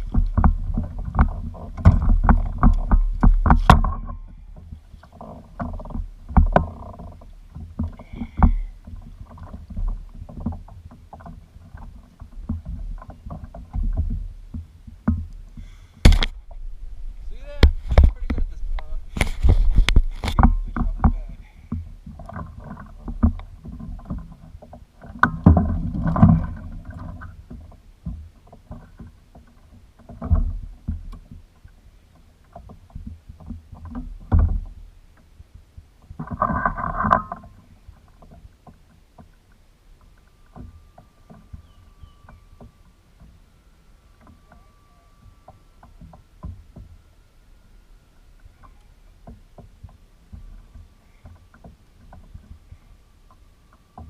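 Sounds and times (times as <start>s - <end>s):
bumps and shuffles: 0.0s - 24.6s
knocks and thumps in boat: 0.0s - 54.0s.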